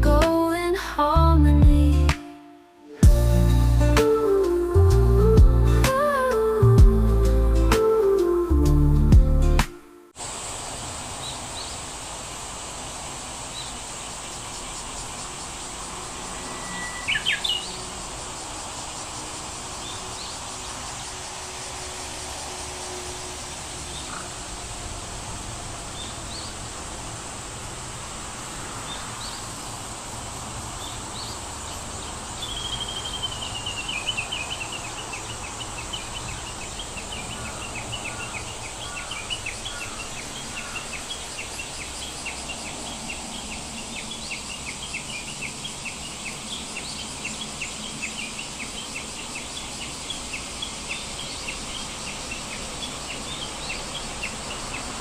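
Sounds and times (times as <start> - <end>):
descending trill: 1.3 - 10.2
high-pitched insect drone: 12.8 - 55.0
bird chirps: 14.6 - 18.0, 30.8 - 55.0.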